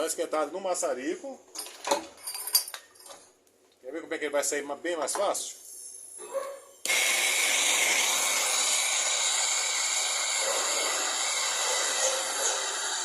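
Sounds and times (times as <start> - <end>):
blowtorch hissing: 6.8 - 13.0.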